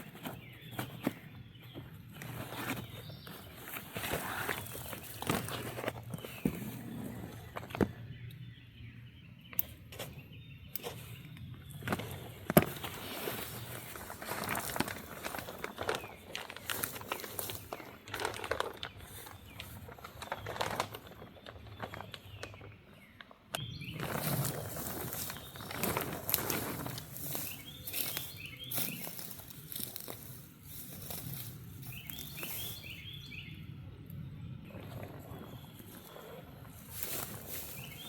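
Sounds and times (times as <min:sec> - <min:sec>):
bird chirping: 0:00.0 - 0:38.0
footsteps crunching through leaves: 0:12.8 - 0:20.4, 0:23.8 - 0:33.4, 0:36.7 - 0:38.0.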